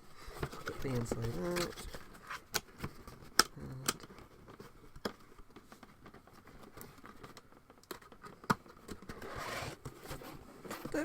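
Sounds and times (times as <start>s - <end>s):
cardboard scraping: 0.0s - 3.3s, 8.7s - 11.0s.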